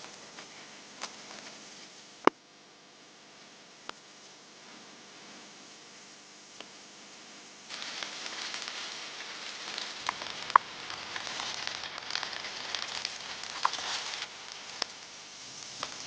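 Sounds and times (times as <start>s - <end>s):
food sizzling in a pan: 7.6s - 16.0s
fat spitting and crackling: 7.7s - 16.0s.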